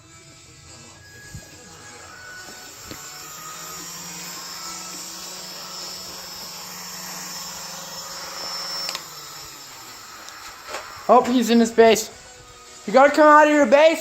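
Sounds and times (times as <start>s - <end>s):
low hum: 0.0s - 12.9s
hiss: 7.0s - 12.9s.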